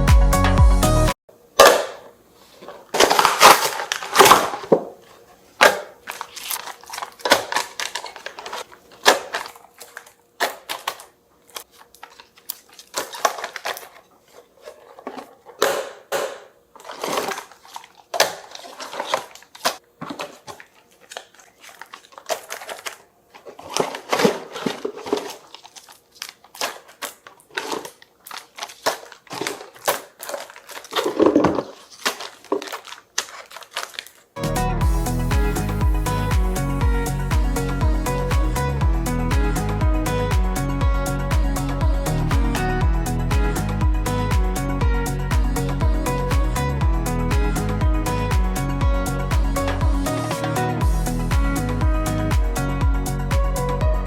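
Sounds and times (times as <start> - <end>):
plastic packaging crinkling: 2.3 - 34.4.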